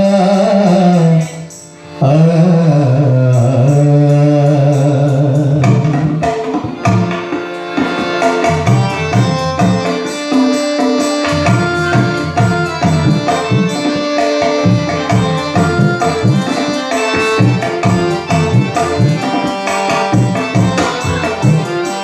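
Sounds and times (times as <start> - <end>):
sustained melodic instruments: 0.0 - 22.0
hand drum rhythm: 5.6 - 22.0.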